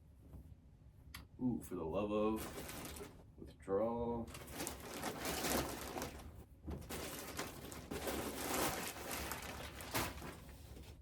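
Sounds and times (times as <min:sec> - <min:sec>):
clothes and packaging rustling: 0:02.2 - 0:03.3, 0:04.2 - 0:11.0.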